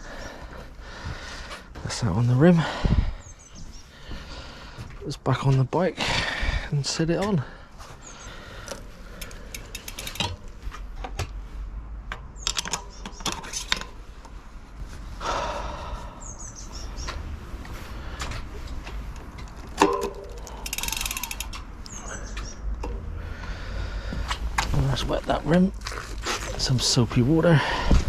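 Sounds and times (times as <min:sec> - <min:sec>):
bicycle wheel clicks and rattles: 0:08.6 - 0:10.9, 0:12.1 - 0:14.0, 0:18.2 - 0:21.9
fine rapid clicks: 0:20.2 - 0:21.7.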